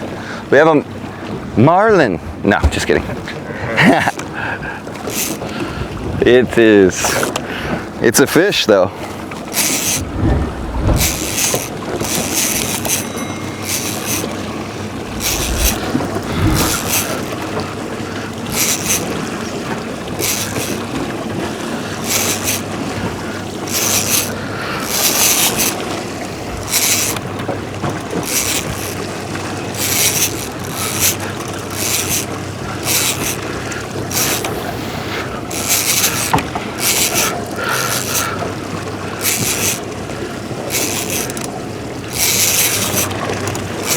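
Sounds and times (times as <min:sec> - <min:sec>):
boat engine: 0:00.0 - 0:43.9
wind noise: 0:09.8 - 0:11.8, 0:15.0 - 0:17.3.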